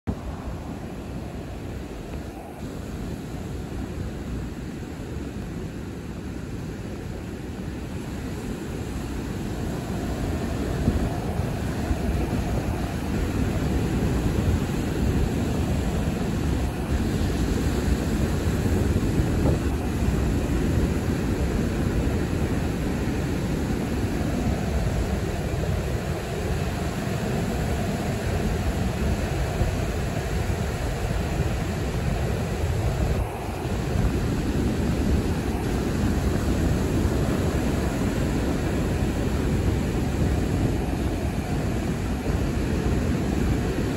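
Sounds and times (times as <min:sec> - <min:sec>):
ocean surf washing: 0:00.1 - 0:43.9
wind rumbling on microphone: 0:00.1 - 0:43.9.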